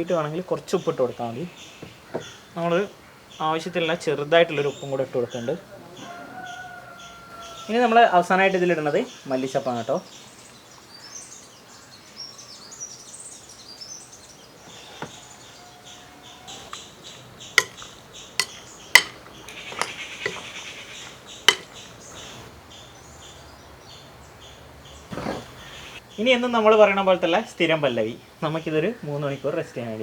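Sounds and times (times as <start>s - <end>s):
utensil clinking against dish: 17.5s - 21.9s.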